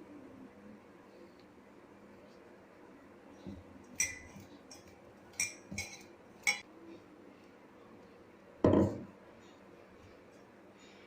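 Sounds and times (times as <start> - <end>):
utensils clinking against dishes: 3.8 - 6.7.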